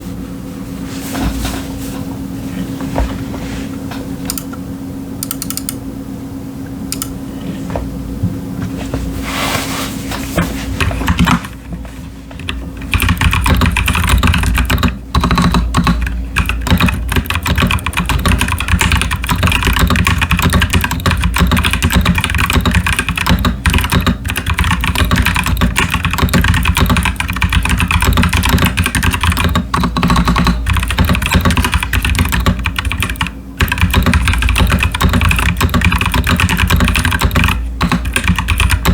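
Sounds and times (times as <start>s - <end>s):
typing on mechanical keyboard: 5.2s - 5.8s, 6.9s - 7.1s, 12.4s - 38.9s.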